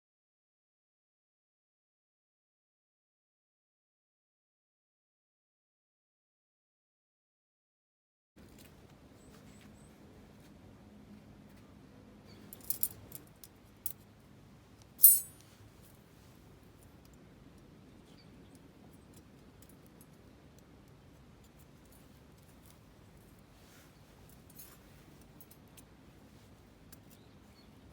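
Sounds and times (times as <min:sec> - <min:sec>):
metal parts clicking: 0:15.0 - 0:15.4
ringing metallic clink: 0:15.0 - 0:15.4.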